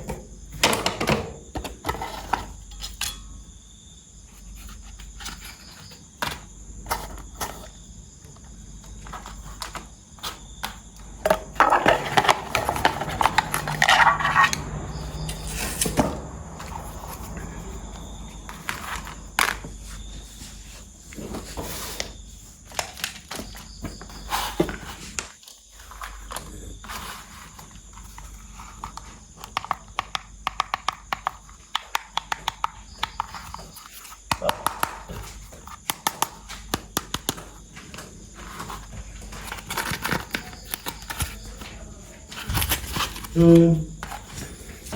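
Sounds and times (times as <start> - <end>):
plastic parts clicking and tapping: 28.1 - 37.6
packaging crinkling: 38.4 - 41.6.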